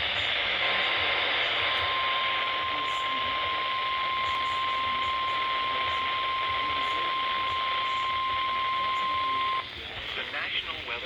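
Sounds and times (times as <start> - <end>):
radio static hiss: 0.0 - 11.0
steady alarm tone: 1.8 - 9.6.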